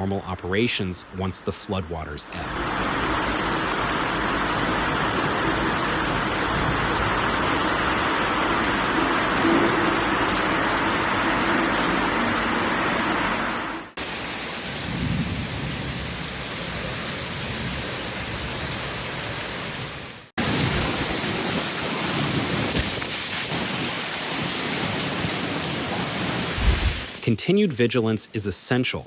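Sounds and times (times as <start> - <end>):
heavy rain pouring: 2.3 - 27.2.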